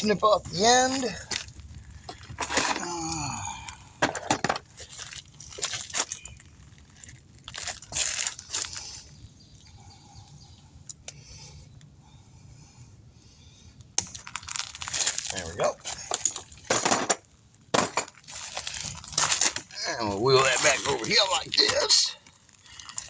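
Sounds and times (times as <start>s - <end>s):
crunchy scrapes of handling: 0.0s - 3.2s, 4.4s - 9.3s, 14.2s - 16.8s, 18.0s - 23.0s.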